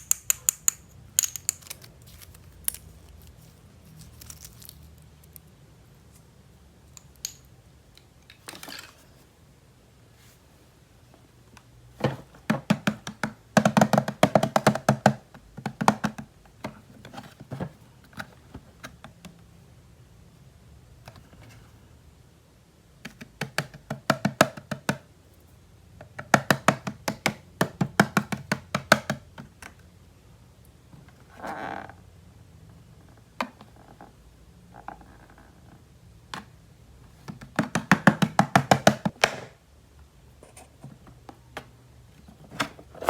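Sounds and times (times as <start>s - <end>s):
clicks on plastic toy pieces: 0.0s - 3.3s.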